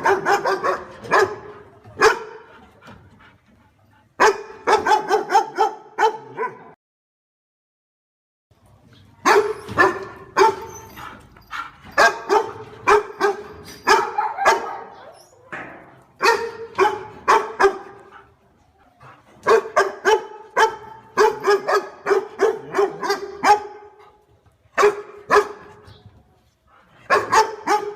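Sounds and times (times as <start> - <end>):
dog barking: 0.0 - 2.5, 4.2 - 6.8, 9.2 - 10.7, 11.9 - 15.1, 16.2 - 18.3, 19.4 - 24.0, 24.8 - 25.8, 27.1 - 27.9.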